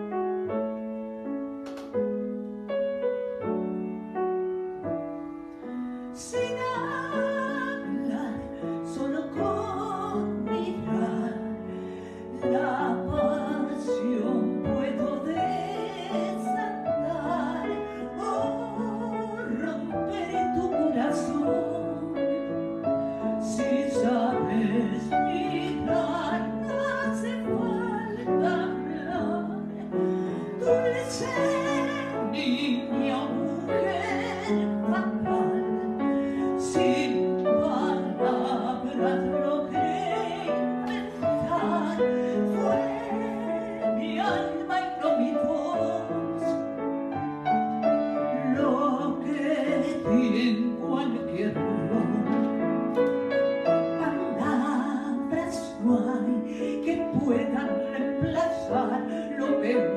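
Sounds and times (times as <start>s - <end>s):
piano and orchestral accompaniment: 0.0s - 59.9s
woman singing operatically: 6.2s - 11.5s, 12.3s - 22.5s, 23.3s - 46.6s, 48.3s - 52.4s, 53.9s - 59.9s.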